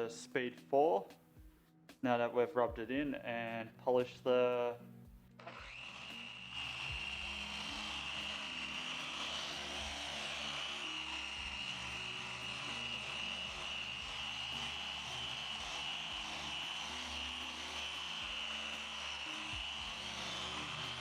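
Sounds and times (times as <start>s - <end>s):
electric polisher whining: 5.4s - 21.0s.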